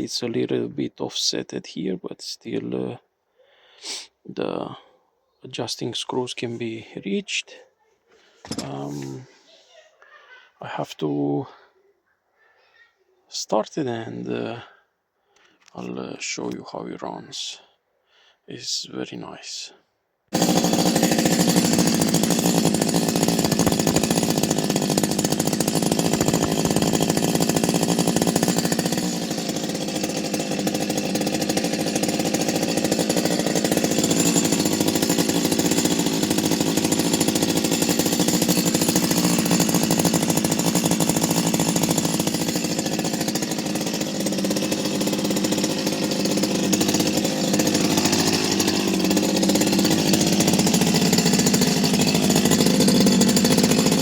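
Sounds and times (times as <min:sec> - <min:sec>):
chainsaw running: 0:08.4 - 0:09.3, 0:20.3 - 0:54.0.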